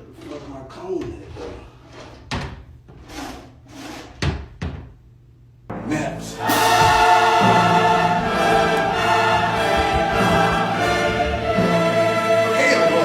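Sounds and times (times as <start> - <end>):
loud orchestral music: 5.8 - 13.0.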